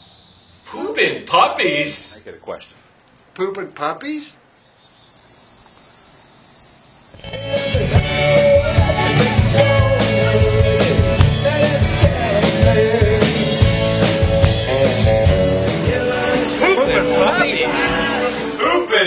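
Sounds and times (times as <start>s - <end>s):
faint hiss: 0.0s - 9.4s
drum kit beating steadily: 7.2s - 18.6s
rock band playing: 7.2s - 18.6s.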